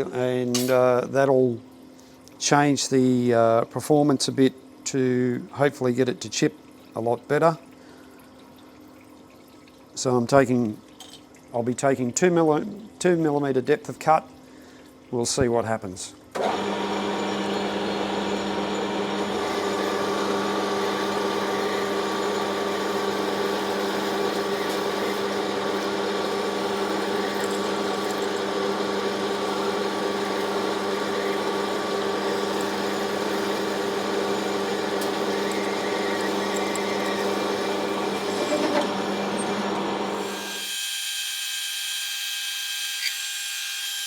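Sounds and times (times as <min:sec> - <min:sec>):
metal lathe humming: 0:16.4 - 0:40.8
lathe tool cutting steel: 0:16.4 - 0:44.0.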